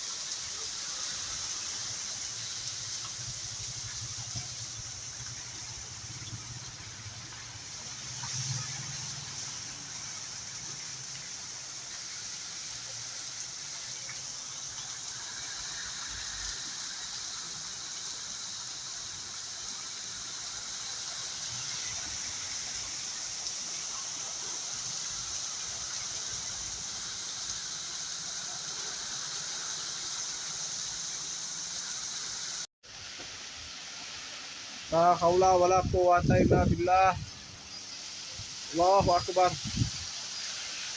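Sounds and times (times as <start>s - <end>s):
heavy rain pouring: 0.0s - 31.0s.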